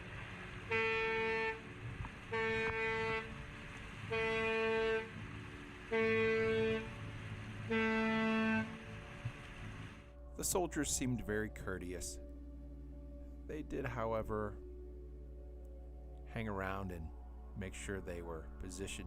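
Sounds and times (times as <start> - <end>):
ship horn short blasts: 0.6 - 10.0.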